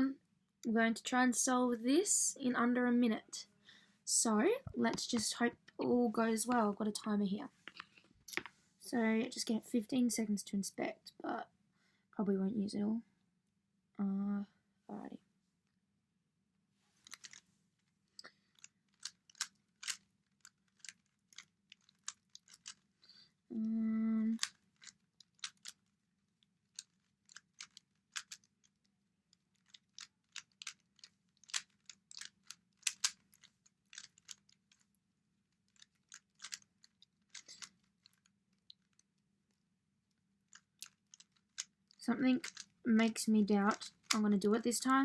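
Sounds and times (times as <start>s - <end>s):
puzzle cube plastic clicks: 7.6s - 8.5s, 17.0s - 17.4s, 18.1s - 23.2s, 24.1s - 45.0s.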